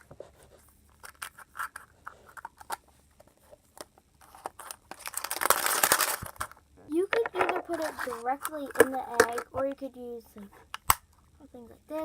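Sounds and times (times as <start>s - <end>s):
crinkling rustle: 0.0s - 6.7s
plastic items clicking and tapping: 1.0s - 9.9s.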